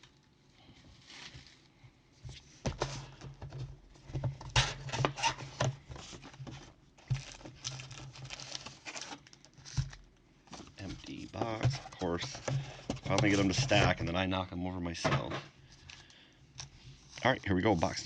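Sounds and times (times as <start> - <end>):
cardboard and packs rustling: 0.6 - 14.2
packs tapping and clacking: 2.7 - 14.1.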